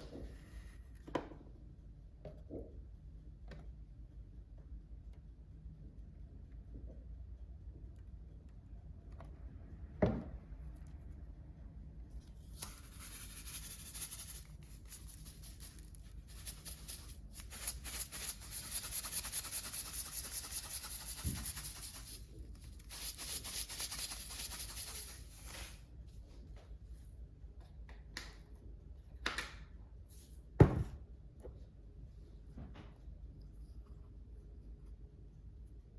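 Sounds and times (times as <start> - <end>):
rapid rasping rubbing strokes: 12.6 - 22.2, 22.9 - 25.6
dull thump: 30.6 - 31.0.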